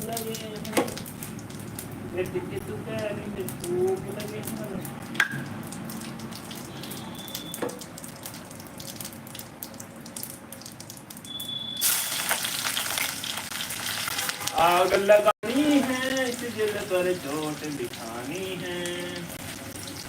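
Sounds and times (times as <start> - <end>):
food sizzling in a pan: 11.3 - 20.0.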